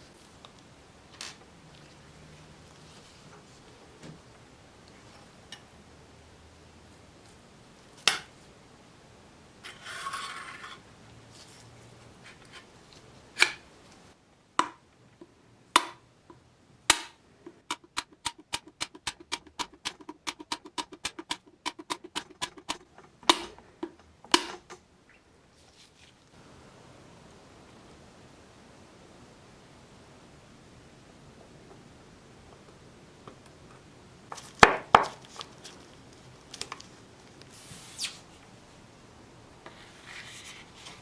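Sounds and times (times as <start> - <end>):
scabbard clicks and knocks: 16.9 - 24.8.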